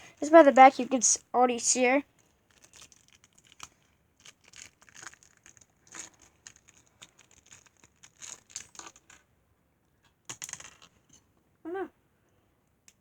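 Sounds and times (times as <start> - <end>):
plastic bag crinkling: 2.2 - 9.2.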